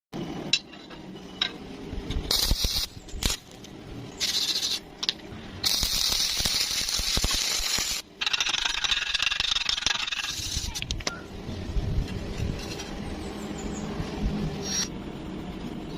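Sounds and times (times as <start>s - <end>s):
welding arc crackling and sizzling: 2.0s - 11.0s.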